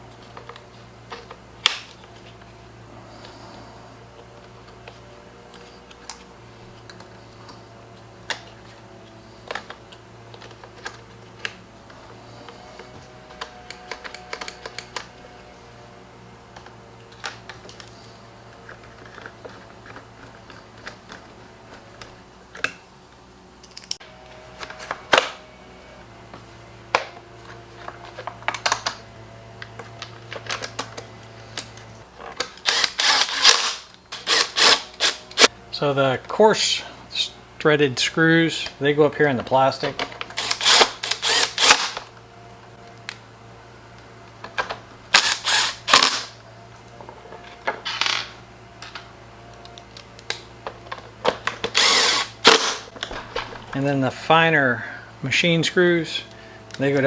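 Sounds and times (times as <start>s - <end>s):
steady low hum: 0.0s - 57.0s
plastic parts clicking and tapping: 29.6s - 33.1s.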